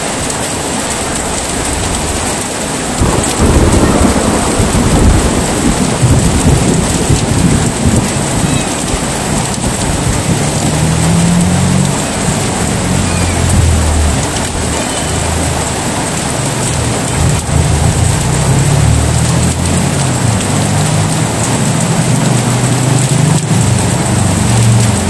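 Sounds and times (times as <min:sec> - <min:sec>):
heavy rain: 0:00.0 - 0:25.0
rolling thunder: 0:01.3 - 0:15.3, 0:16.1 - 0:21.6.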